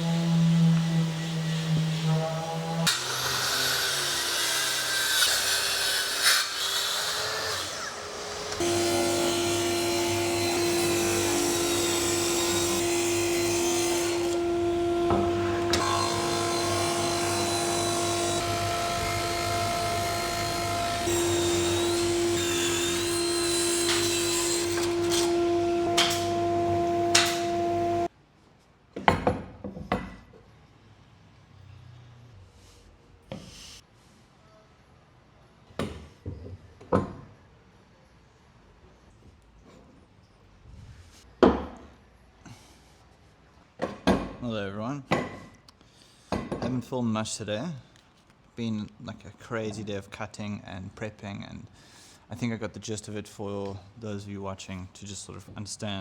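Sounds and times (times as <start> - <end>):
power tools cutting wood: 0.0 - 28.1.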